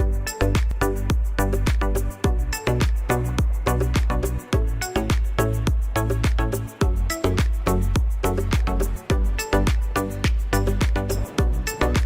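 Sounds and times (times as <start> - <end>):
heavy bass line: 0.0 - 12.0.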